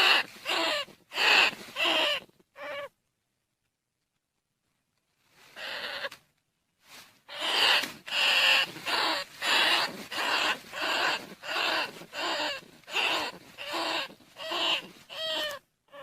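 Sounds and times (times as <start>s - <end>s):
rats squealing: 0.0s - 2.9s, 5.6s - 6.2s, 7.3s - 16.0s.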